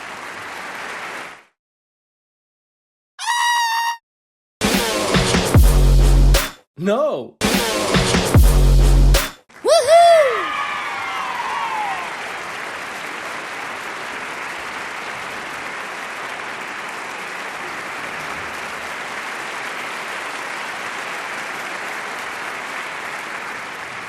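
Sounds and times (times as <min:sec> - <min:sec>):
crowd applause: 0:00.0 - 0:01.5, 0:09.5 - 0:24.0.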